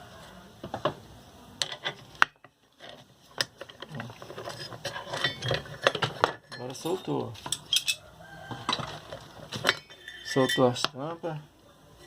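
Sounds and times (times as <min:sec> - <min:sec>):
clicks knocks and scraping: 0:02.8 - 0:10.4.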